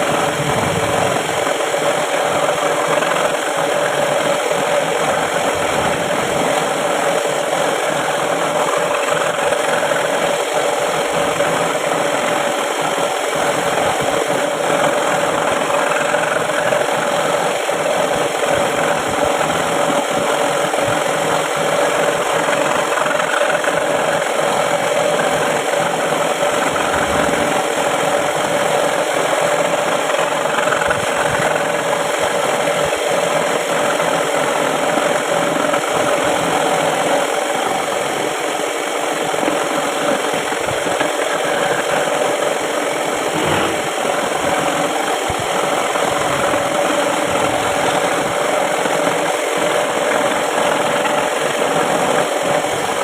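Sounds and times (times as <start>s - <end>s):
scroll saw buzzing: 39.5s - 48.5s.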